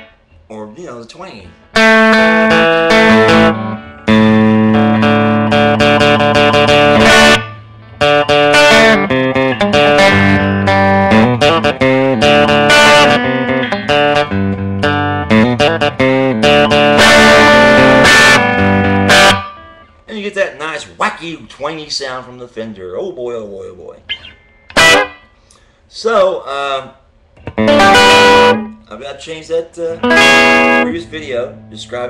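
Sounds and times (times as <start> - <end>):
twangy electric guitar: 1.6 - 20.0, 24.1 - 25.4, 27.3 - 28.9, 29.9 - 32.0.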